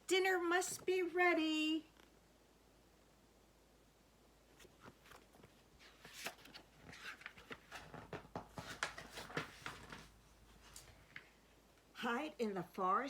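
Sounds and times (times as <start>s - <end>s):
paper pages rustling: 4.6s - 11.3s.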